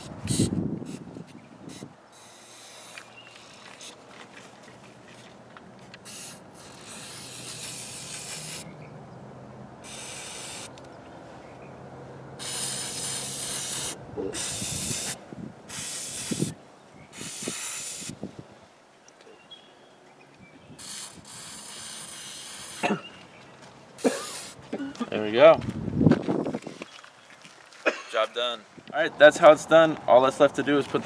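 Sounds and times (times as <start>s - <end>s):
aerosol spray hissing: 1.7s - 3.1s, 6.0s - 8.7s, 9.8s - 10.7s, 12.4s - 16.6s, 17.2s - 18.2s, 20.8s - 22.8s, 24.0s - 24.6s.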